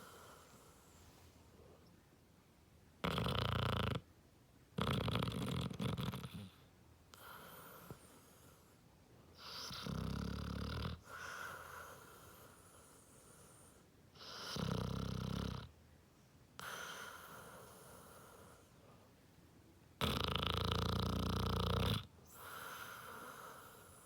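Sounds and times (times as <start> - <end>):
soft dog breathing: 0.0 - 1.9, 4.9 - 15.7, 16.6 - 19.2, 22.2 - 24.0
dog snoring loudly: 3.0 - 4.0, 4.8 - 6.6, 9.4 - 12.2, 14.2 - 15.7, 20.0 - 24.0.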